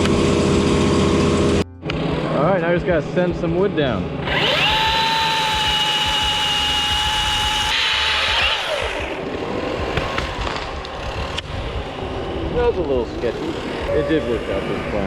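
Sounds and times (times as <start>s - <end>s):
electric chainsaw whining: 4.1s - 15.0s.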